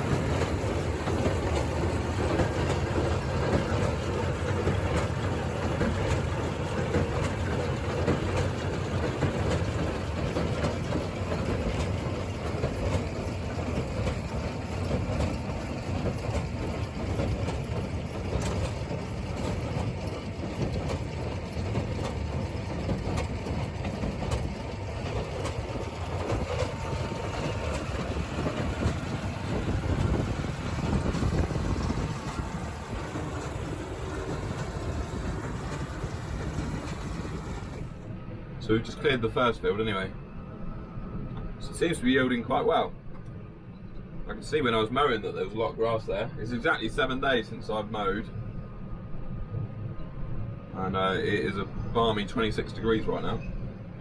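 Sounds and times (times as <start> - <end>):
tractor engine running: 0.0 - 38.1
trailer rattling over ground: 0.0 - 38.2.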